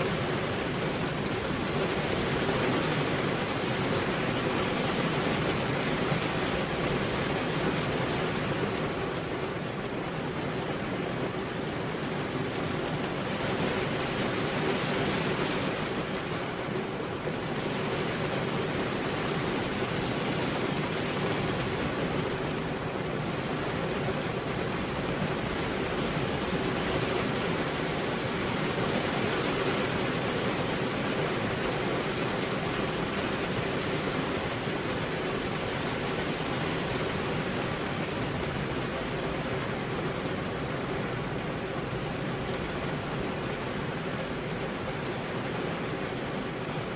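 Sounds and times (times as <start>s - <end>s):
heavy rain on road: 0.0s - 46.9s.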